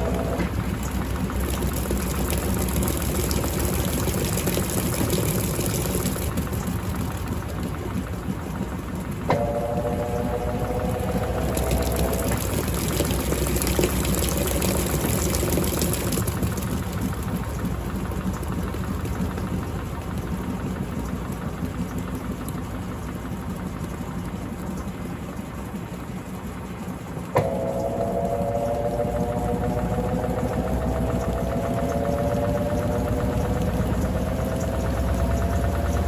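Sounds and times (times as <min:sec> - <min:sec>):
washing machine motor hum: 0:00.0 - 0:36.0
whining tone: 0:27.4 - 0:36.0.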